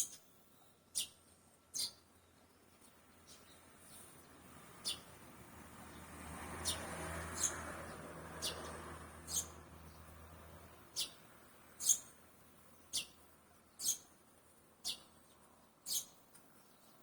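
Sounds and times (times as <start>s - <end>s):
swallow chirping: 0.0s - 2.0s, 9.3s - 9.6s, 11.8s - 12.2s, 13.8s - 14.1s, 15.8s - 16.2s.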